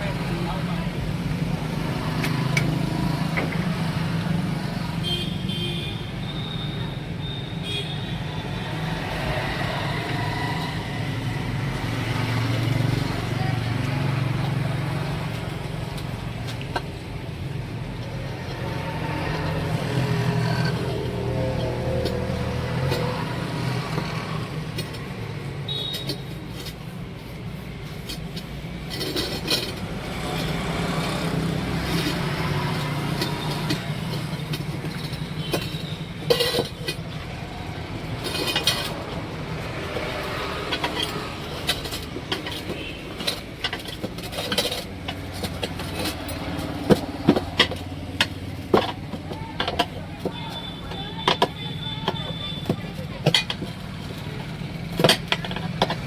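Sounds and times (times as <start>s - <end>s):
tyre-changing knocks and clanks: 27.7s - 56.0s.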